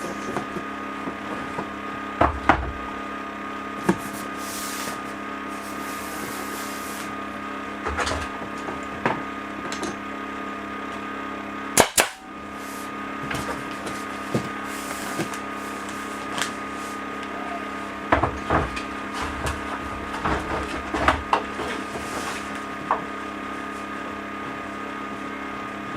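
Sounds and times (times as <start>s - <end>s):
steady machine hum: 0.0s - 25.9s
staple gun firing: 11.8s - 12.2s.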